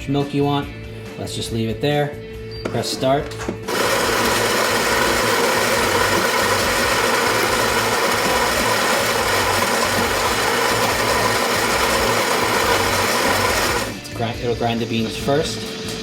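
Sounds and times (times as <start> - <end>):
coffee grinder grinding beans: 3.6 - 14.2.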